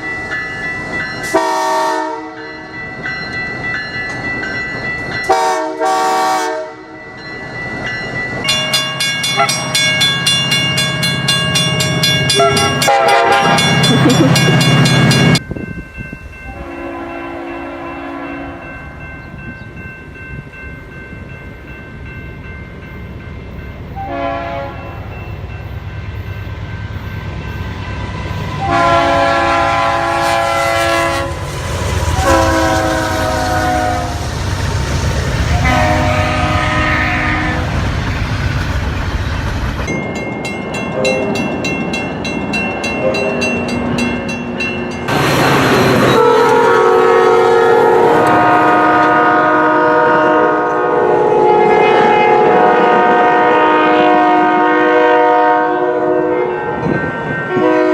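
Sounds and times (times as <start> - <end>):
passing train rumble: 0.0 - 57.9
locomotive air horn: 1.3 - 2.4, 5.3 - 6.9, 12.3 - 13.8, 16.4 - 18.7, 24.0 - 25.0, 28.6 - 31.4, 32.1 - 34.3, 35.5 - 37.8, 45.9 - 56.9, 57.5 - 57.9.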